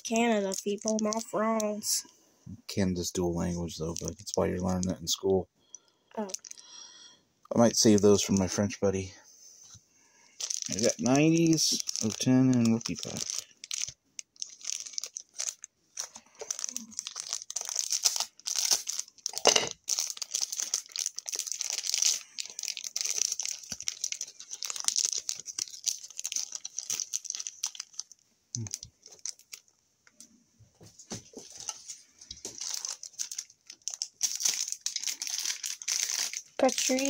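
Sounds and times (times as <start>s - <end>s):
wrappers tearing and crinkling: 0.0s - 1.4s, 3.4s - 4.9s, 6.2s - 6.7s, 10.4s - 29.8s, 31.6s - 37.0s.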